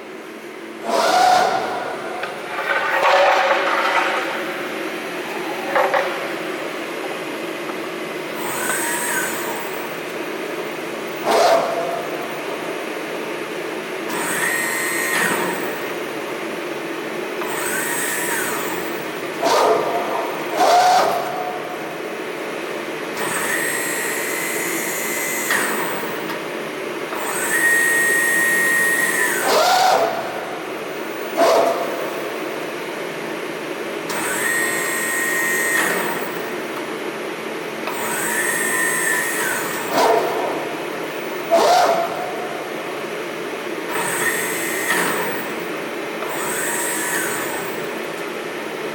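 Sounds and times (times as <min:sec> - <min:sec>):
steady machine hum: 0:00.0 - 0:35.4, 0:36.2 - 0:48.9
servo drives whining: 0:37.9 - 0:42.6.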